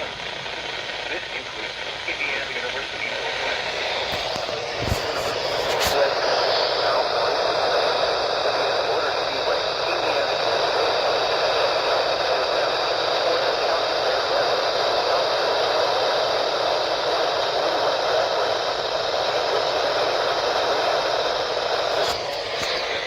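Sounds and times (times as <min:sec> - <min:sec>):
radio static hiss: 0:00.0 - 0:23.0.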